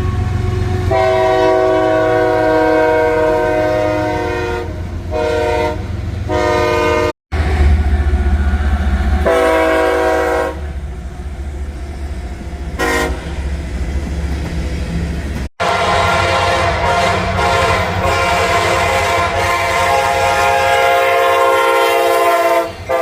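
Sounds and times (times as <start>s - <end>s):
locomotive horns: 0.0s - 7.7s, 9.1s - 10.8s, 12.7s - 13.5s, 15.6s - 23.0s
train rumbling: 0.0s - 23.0s.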